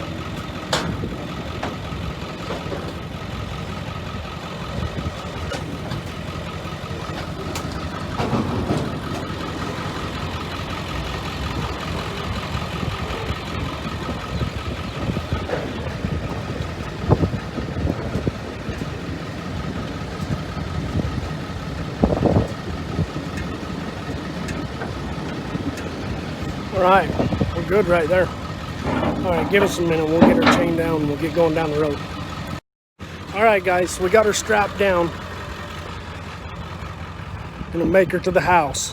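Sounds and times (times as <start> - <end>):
diesel engine idling: 0.0 - 38.9
thumps: 27.8 - 32.0.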